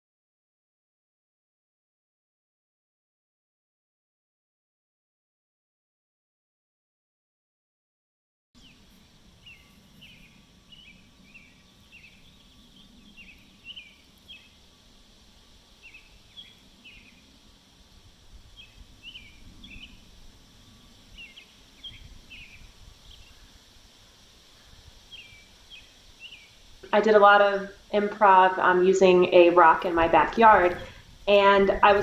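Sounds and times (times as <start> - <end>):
small bird chirping: 8.6 - 14.6, 15.8 - 17.4, 18.5 - 23.7, 24.5 - 26.9.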